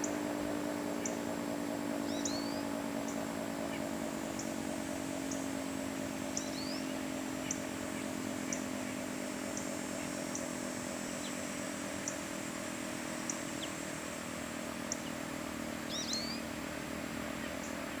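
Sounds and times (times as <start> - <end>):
birds chirping: 0.0 - 18.0.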